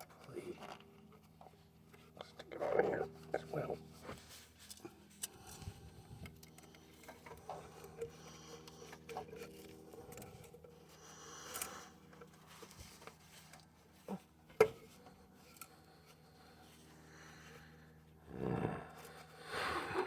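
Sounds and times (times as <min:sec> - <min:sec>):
faint steady hum: 0:00.0 - 0:20.0
hose handling scrapes and clicks: 0:03.2 - 0:16.2.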